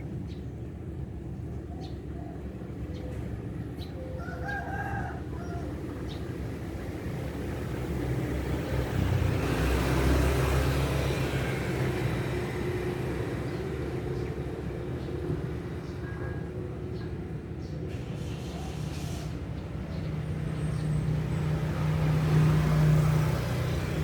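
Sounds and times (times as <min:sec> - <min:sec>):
passing vehicle rumble: 0:02.4 - 0:24.0
rooster crowing: 0:04.2 - 0:05.8.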